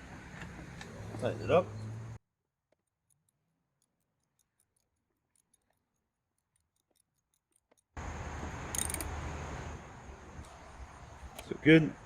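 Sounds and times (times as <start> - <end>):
socket ratchet clicking: 8.6 - 9.2.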